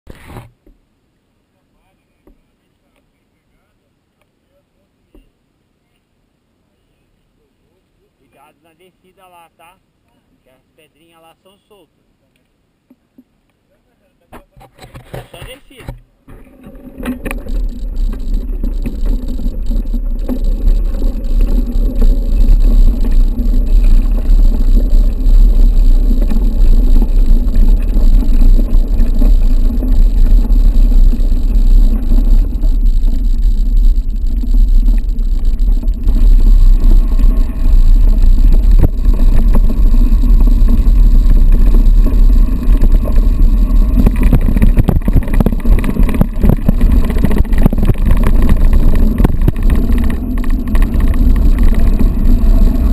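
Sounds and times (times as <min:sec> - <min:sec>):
bike tyre and frame noise: 0:00.1 - 0:00.8, 0:14.6 - 0:52.9
wind rush on microphone: 0:17.0 - 0:52.9.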